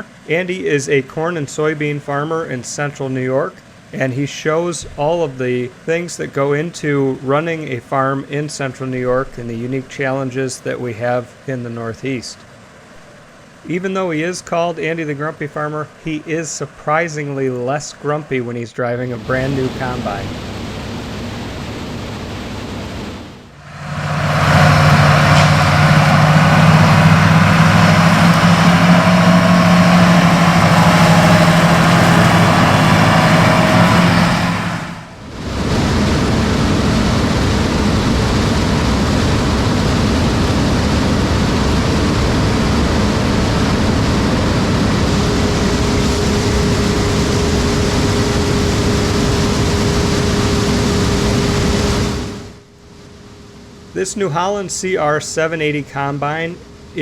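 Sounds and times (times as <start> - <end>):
faint steady whine: 0.0 - 57.0
combine harvester engine hum: 18.9 - 57.0
noisy machinery: 18.9 - 57.0.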